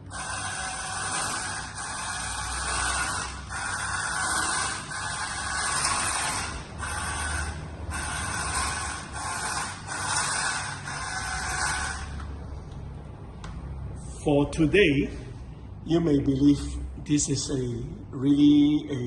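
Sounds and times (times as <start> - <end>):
toy car motor and gears whirring: 0.0 - 12.3.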